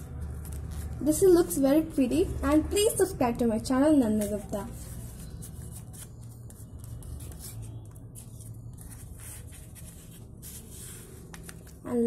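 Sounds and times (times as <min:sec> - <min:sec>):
paper rustling: 0:00.0 - 0:01.2, 0:04.0 - 0:12.0.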